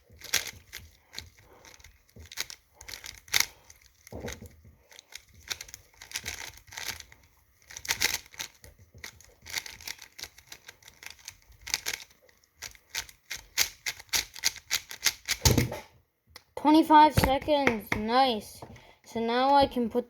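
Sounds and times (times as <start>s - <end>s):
speed cube clacking: 0.0s - 15.7s.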